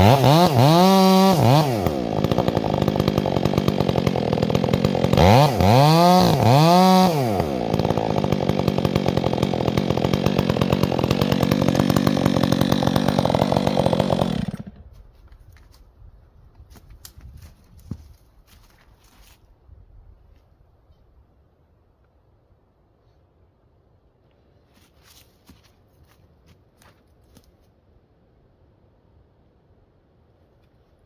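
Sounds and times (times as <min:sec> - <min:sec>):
chainsaw engine revving: 0:00.0 - 0:14.8.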